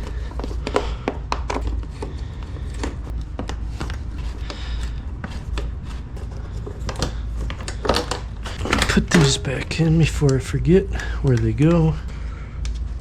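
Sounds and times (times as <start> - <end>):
steady low hum: 0.0 - 13.0
hand tools clicking and knocking: 6.6 - 10.6.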